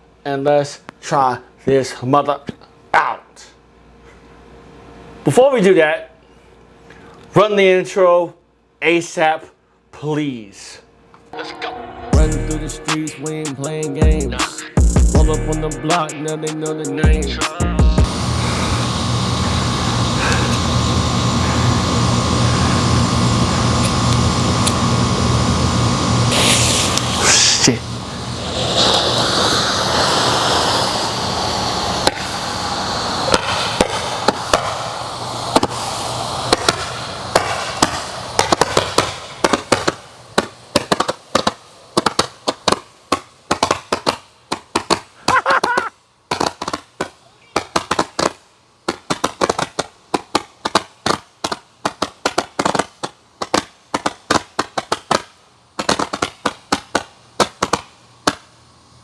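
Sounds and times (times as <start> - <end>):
firework hissing spray: 18.0 - 44.1, 45.2 - 45.9
firework sharp pops: 26.3 - 27.8, 28.4 - 30.8, 31.9 - 32.5, 33.2 - 58.5.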